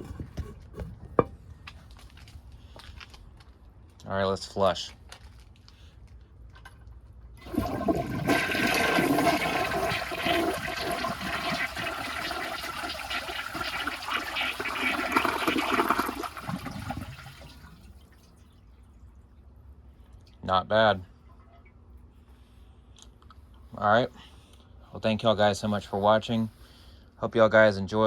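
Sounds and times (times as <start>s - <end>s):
toilet flushing: 7.4s - 18.2s.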